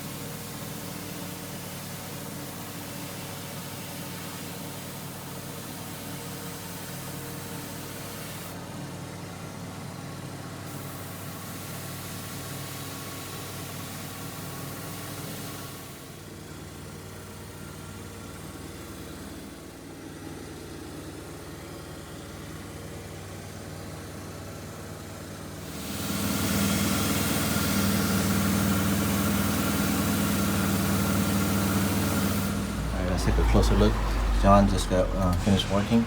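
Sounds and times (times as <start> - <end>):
loud steady hiss: 25.6 - 33.8
machine humming: 25.7 - 36.0.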